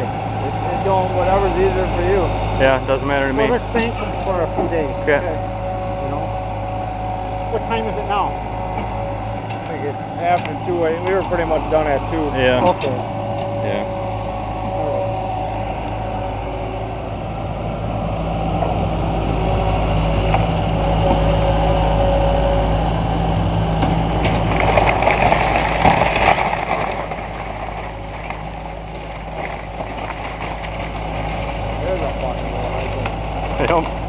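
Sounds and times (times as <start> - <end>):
diesel engine working under load: 0.0 - 34.0
wood crunching and cracking: 23.8 - 34.0.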